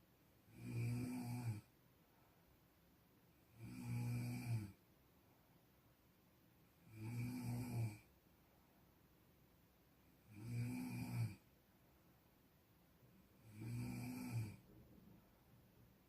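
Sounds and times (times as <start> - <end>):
person snoring: 0.5 - 1.7, 3.5 - 4.8, 6.8 - 8.1, 10.2 - 11.4, 13.4 - 14.7.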